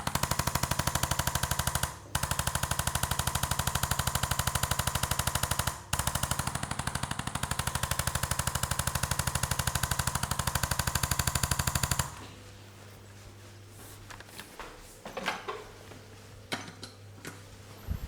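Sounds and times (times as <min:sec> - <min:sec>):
massage gun hammering: 0:00.0 - 0:12.2.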